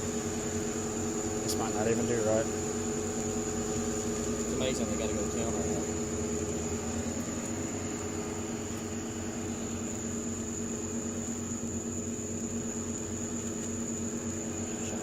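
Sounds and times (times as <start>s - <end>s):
idling vehicle hum: 0.0s - 15.0s.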